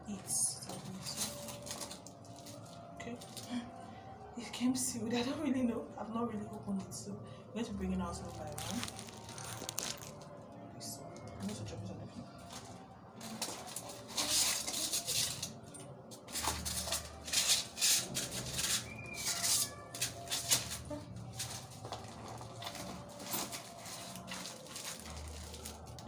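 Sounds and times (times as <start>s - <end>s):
small items being handled: 0.6s - 3.7s, 8.0s - 26.0s
packaging rustling: 0.9s - 3.5s, 8.0s - 10.4s, 12.4s - 15.6s, 16.3s - 26.0s.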